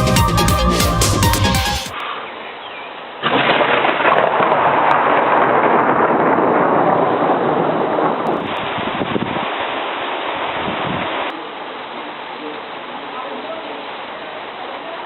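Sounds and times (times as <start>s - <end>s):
heavy rain pouring: 0.0s - 15.0s.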